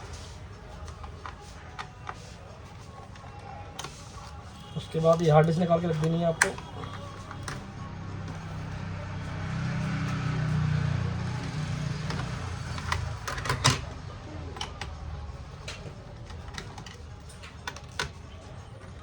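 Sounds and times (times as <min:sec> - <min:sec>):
clicks and taps of laptop parts: 0:04.6 - 0:07.7.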